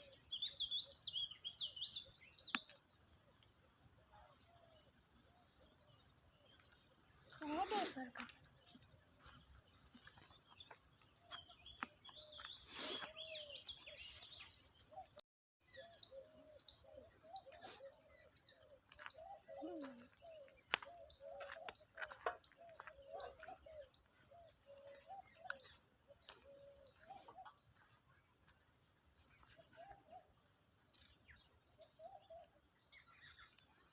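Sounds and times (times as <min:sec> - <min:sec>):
high twittering bird chirps: 0:00.0 - 0:03.1, 0:05.5 - 0:27.9.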